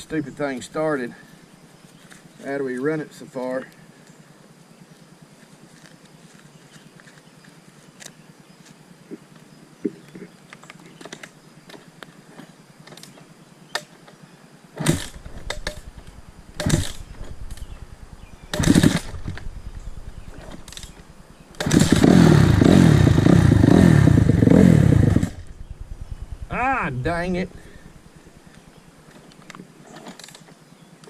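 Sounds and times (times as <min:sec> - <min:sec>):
motorcycle engine running loudly: 0:14.8 - 0:28.5
motorcycle engine sputtering: 0:14.8 - 0:29.2.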